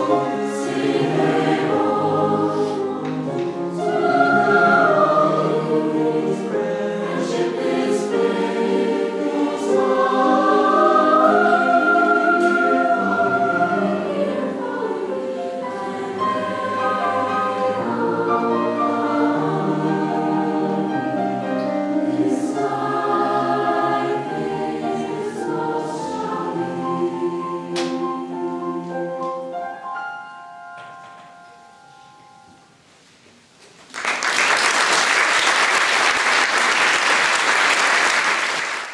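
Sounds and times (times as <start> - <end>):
choir singing in harmony: 0.0 - 30.2.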